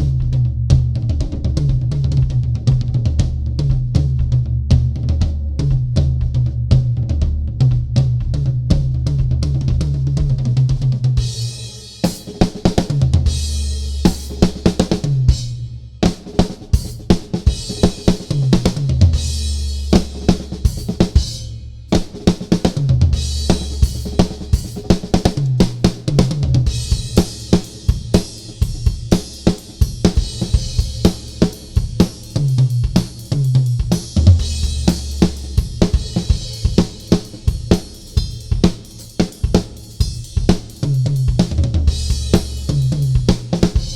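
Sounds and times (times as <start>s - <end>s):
drum kit solo: 0.0s - 43.9s
hi-hat and crash cymbals: 26.7s - 43.9s.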